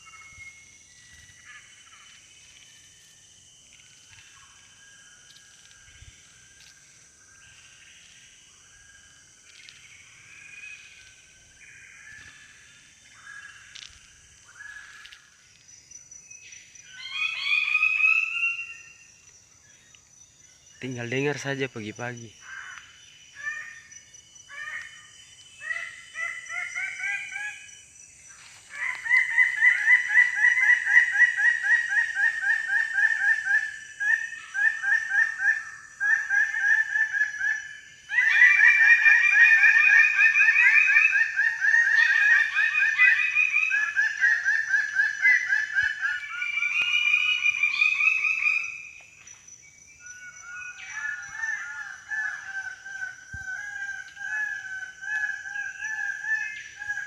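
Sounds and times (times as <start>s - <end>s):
birds calling in chorus: 16.2s - 57.0s.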